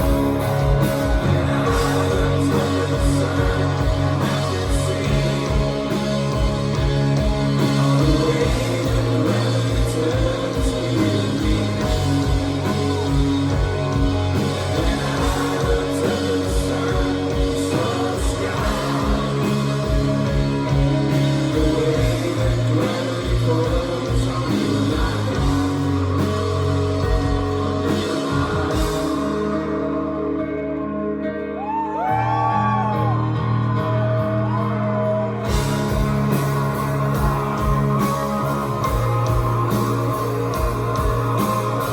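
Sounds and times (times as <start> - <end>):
person singing: 0.0 - 30.8
live rock band playing: 0.0 - 41.9.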